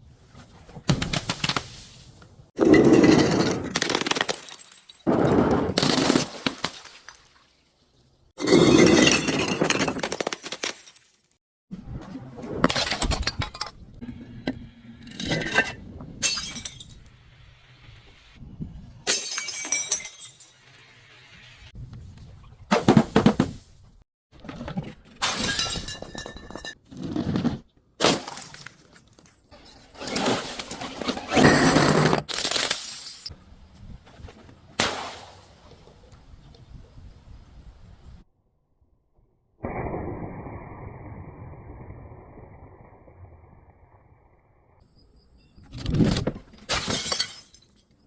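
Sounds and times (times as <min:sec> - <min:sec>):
glass bottles shattering: 0:02.6 - 0:07.0, 0:08.4 - 0:11.4, 0:15.3 - 0:17.0, 0:19.1 - 0:20.6, 0:25.2 - 0:26.8, 0:32.3 - 0:33.3, 0:46.7 - 0:48.0.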